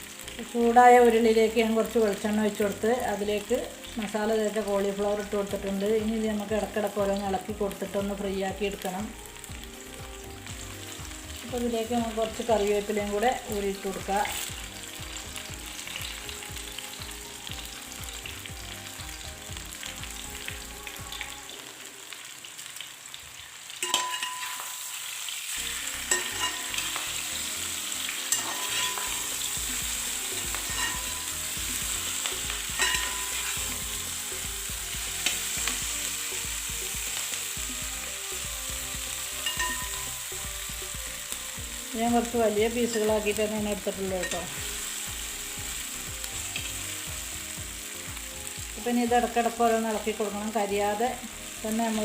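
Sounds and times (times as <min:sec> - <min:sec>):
vegetables sizzling in oil: 0:00.0 - 0:52.0
spoon clinking against pan: 0:23.8 - 0:25.0, 0:26.1 - 0:27.1, 0:28.3 - 0:29.3, 0:30.6 - 0:31.3, 0:32.8 - 0:33.6, 0:39.4 - 0:40.1.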